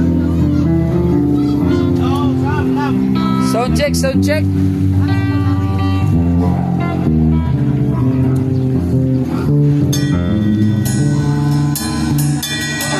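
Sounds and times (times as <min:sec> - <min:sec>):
electric bass: 0:00.0 - 0:12.9
electric guitar chords: 0:00.0 - 0:12.9
bright struck accents: 0:09.7 - 0:12.9.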